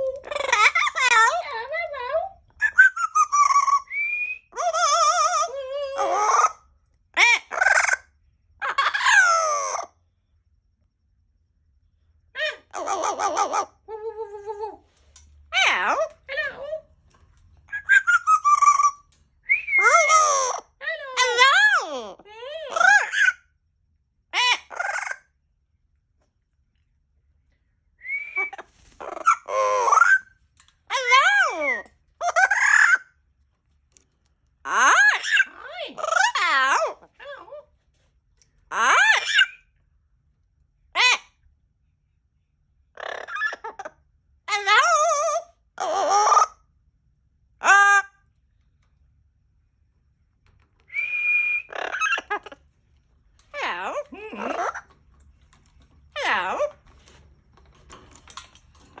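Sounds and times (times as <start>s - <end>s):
parrot calls: 0.0s - 10.0s, 12.3s - 23.6s, 24.3s - 25.4s, 28.0s - 33.2s, 34.6s - 37.8s, 38.6s - 39.8s, 40.8s - 41.5s, 42.8s - 46.9s, 47.6s - 48.4s, 50.6s - 59.0s
parrot warbling call: 15.5s - 16.9s, 24.3s - 25.3s, 30.9s - 33.1s, 34.6s - 37.6s, 38.7s - 39.6s, 42.9s - 46.7s, 50.9s - 52.7s, 53.5s - 55.0s, 56.1s - 56.9s.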